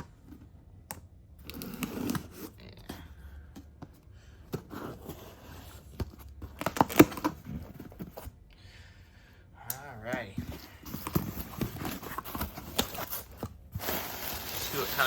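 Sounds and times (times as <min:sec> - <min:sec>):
package tearing and rustling: 0:11.0 - 0:15.0.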